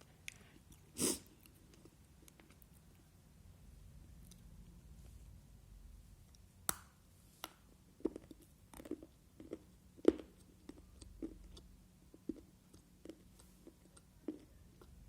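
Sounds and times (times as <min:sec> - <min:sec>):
chewing crunches: 0:08.0 - 0:15.0.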